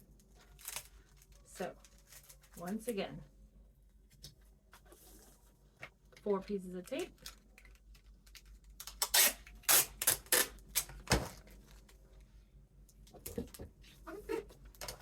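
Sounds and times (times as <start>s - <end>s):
packing tape ripping: 8.7s - 11.2s.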